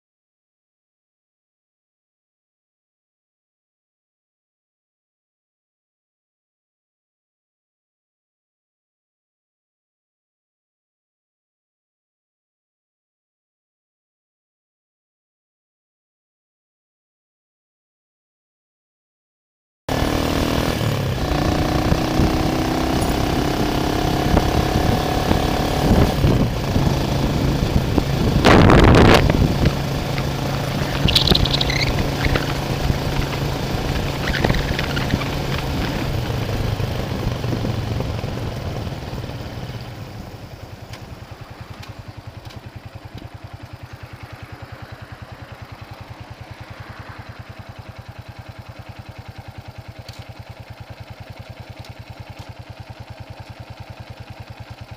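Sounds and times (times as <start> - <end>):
vehicle engine running: 19.9 - 54.9.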